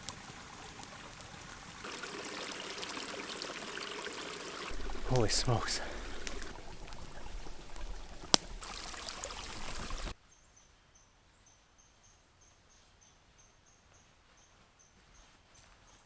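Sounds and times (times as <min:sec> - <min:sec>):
rushing river water: 0:00.0 - 0:10.2.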